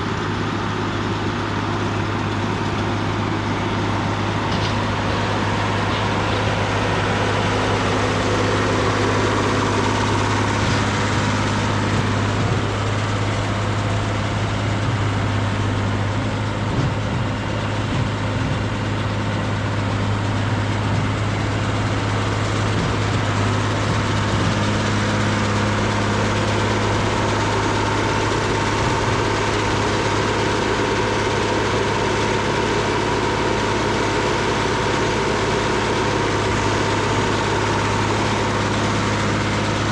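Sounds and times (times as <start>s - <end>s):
round baler working: 0.0s - 39.9s
tractor diesel engine running: 0.0s - 39.9s.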